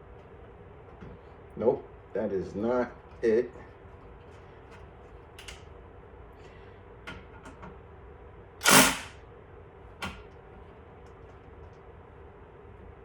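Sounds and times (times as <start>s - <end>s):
sharp click: 8.6s - 9.2s.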